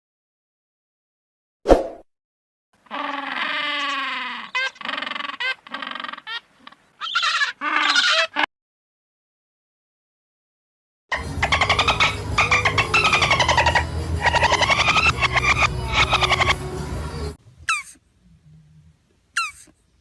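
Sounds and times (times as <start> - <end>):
animal calling: 2.8 - 8.5, 11.1 - 16.9, 17.6 - 19.8.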